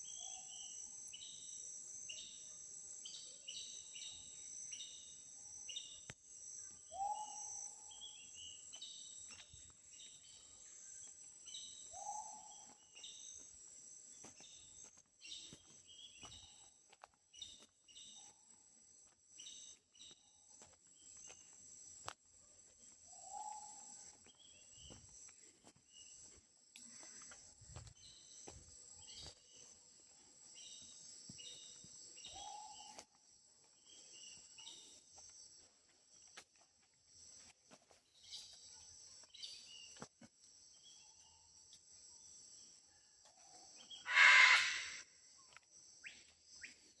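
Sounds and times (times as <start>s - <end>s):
bird calls and chirps: 0.0s - 1.4s, 6.8s - 13.4s, 23.1s - 24.9s, 30.6s - 33.1s, 43.3s - 45.0s
high-pitched insect chorus: 0.0s - 47.0s.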